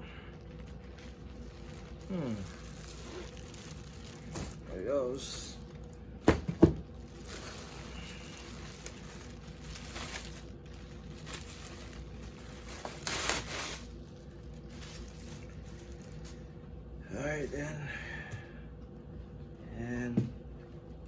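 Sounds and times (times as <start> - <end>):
packaging rustling: 0.4 - 6.0, 6.8 - 16.4.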